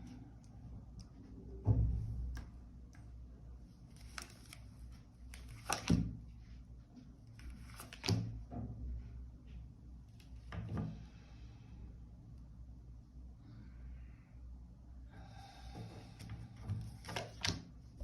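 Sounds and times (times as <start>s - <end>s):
low room hum: 0.0s - 18.0s
cards tapping and rustling: 5.3s - 6.2s, 7.4s - 8.3s, 16.6s - 17.6s.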